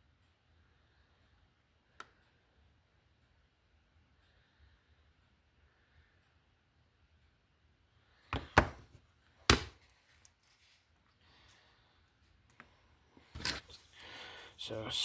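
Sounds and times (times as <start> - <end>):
hard objects knocking on workbench: 8.4 - 8.8.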